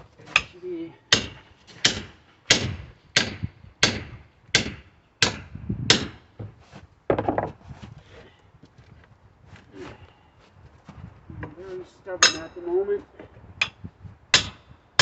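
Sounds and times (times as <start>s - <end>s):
sledgehammer striking wood pallet: 1.1s - 6.2s.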